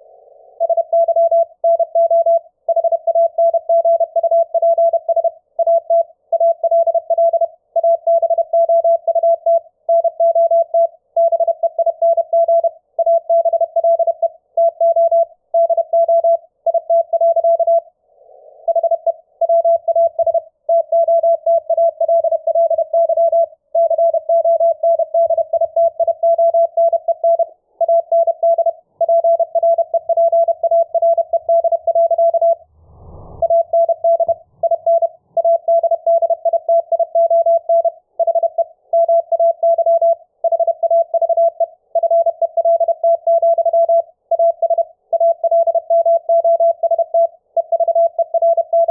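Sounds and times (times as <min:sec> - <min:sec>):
morse code tone: 0:18.7 - 0:48.9.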